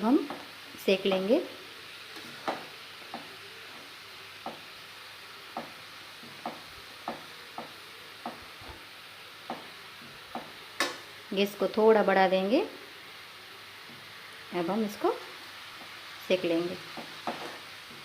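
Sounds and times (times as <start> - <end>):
carrots sizzling in a pan: 0.0 - 18.0
utensil knocking against a pan: 2.4 - 3.3, 4.4 - 4.6, 5.5 - 8.5, 10.3 - 11.0, 16.9 - 17.6.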